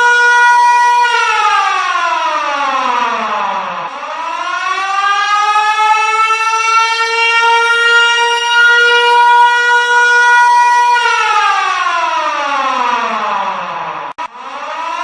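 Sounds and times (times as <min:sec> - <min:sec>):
siren: 0:00.0 - 0:15.0.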